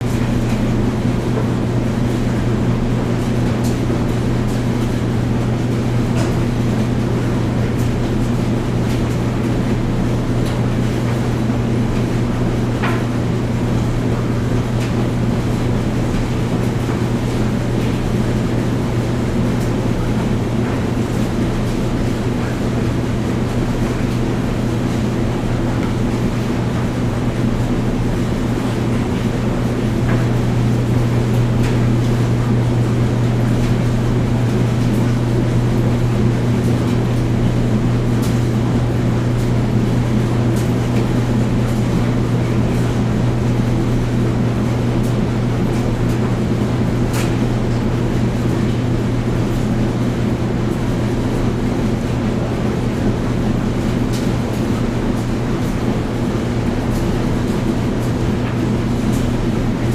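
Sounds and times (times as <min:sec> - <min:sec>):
washing machine and dryer rumbling: 0:00.0 - 0:59.9.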